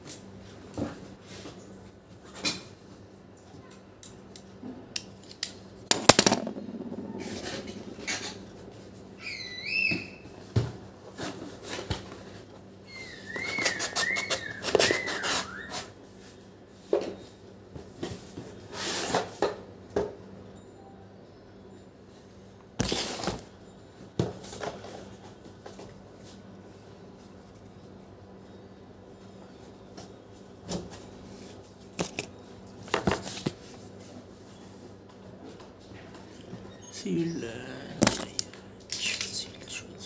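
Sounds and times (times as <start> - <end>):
packaging rustling and clicking: 32.0 - 32.3.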